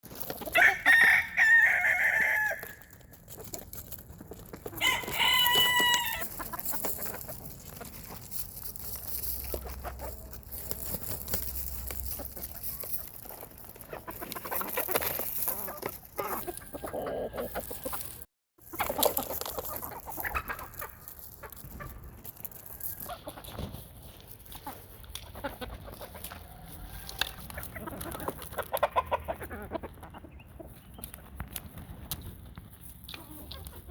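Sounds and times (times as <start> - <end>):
chickens clucking: 0.1 - 32.2, 33.0 - 33.9
rooster crowing: 0.6 - 2.8, 4.8 - 6.3.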